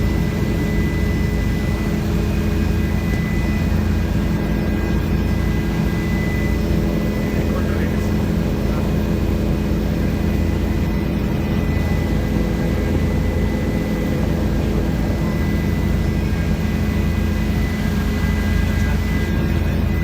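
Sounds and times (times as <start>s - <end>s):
helicopter engine and rotors: 0.0s - 20.0s.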